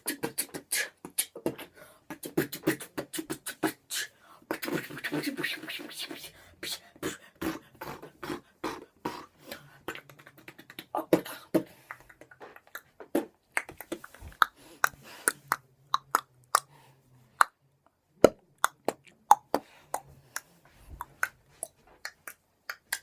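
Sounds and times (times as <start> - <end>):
person beatboxing: 0.0 - 16.7, 18.2 - 23.0.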